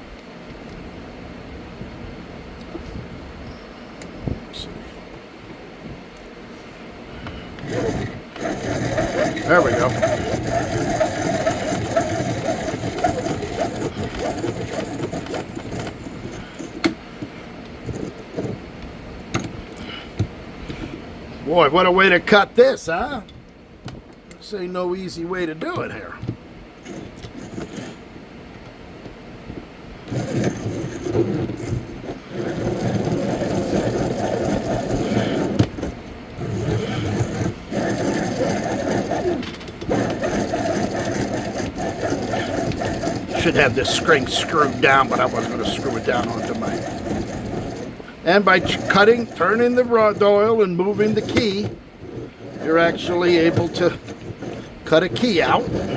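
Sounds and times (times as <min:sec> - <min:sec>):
key machine cutter grinding: 0:07.5 - 0:20.9, 0:25.6 - 0:28.1, 0:30.0 - 0:55.9.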